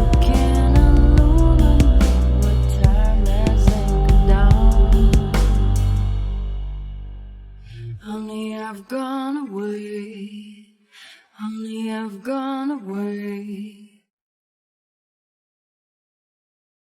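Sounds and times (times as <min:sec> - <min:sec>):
unaccompanied voice singing: 0:00.0 - 0:06.1, 0:07.7 - 0:13.9
song chord: 0:00.0 - 0:07.2.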